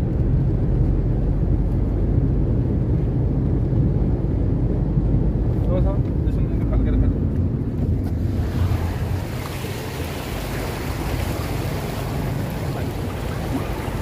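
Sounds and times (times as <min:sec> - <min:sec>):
wind buffeting microphone: 0:00.0 - 0:14.0
floodwater rushing and splashing: 0:08.1 - 0:14.0.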